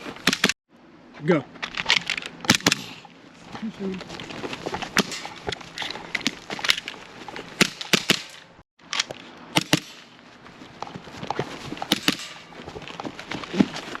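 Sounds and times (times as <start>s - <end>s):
airsoft pistol firing: 2.5s - 3.0s, 9.6s - 10.0s.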